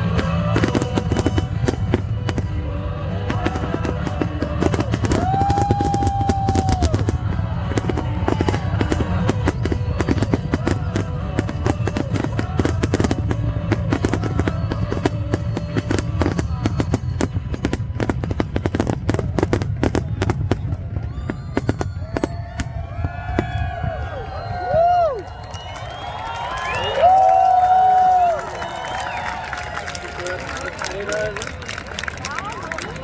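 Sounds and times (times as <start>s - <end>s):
music playing: 0.0s - 20.0s
firework bangs and crackles: 0.0s - 33.0s.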